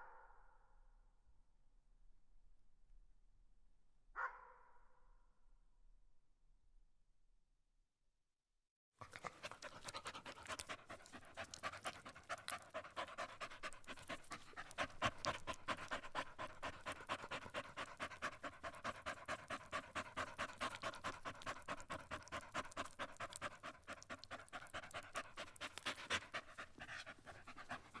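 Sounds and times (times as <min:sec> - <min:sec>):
dog panting: 0:09.0 - 0:28.0.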